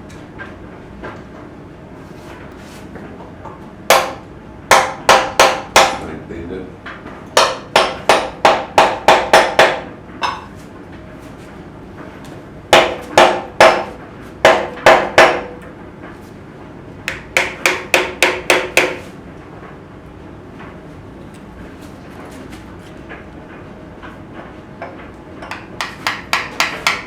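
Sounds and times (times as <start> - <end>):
hammer striking metal: 3.9 - 6.0, 7.4 - 10.5, 12.8 - 13.9, 14.5 - 15.6, 17.1 - 19.0, 25.4 - 27.0.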